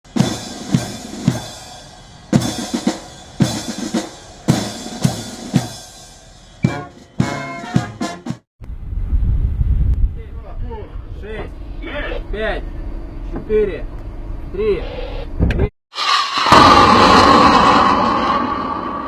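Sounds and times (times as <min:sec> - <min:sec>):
heavy drum beat: 0:00.0 - 0:08.5.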